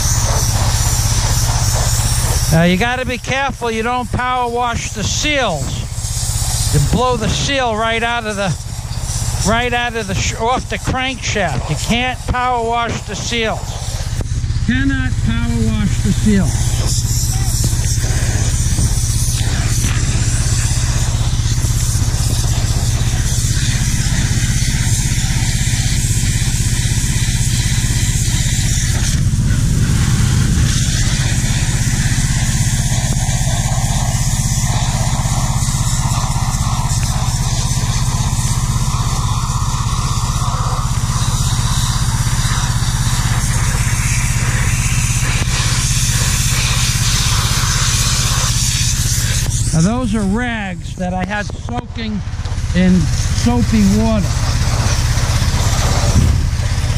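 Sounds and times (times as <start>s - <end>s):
high-pressure water jet hissing: 0.0s - 56.9s
pressure washer motor humming: 0.0s - 56.9s.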